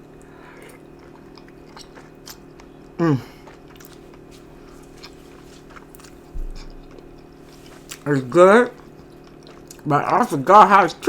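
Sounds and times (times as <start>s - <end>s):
mussels being chewed: 0.2s - 11.0s.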